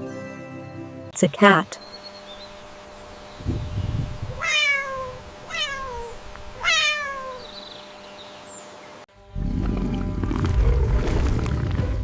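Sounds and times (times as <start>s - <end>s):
cat meowing: 4.2s - 7.7s
low rumble: 9.2s - 12.0s.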